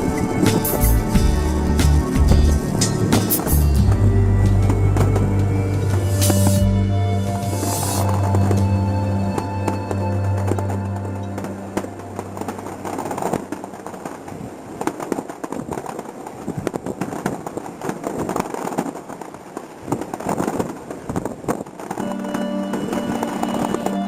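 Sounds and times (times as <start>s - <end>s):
fireworks cracking and crackling: 0.0s - 5.2s, 9.4s - 24.0s
background music: 0.0s - 13.7s, 22.0s - 24.0s.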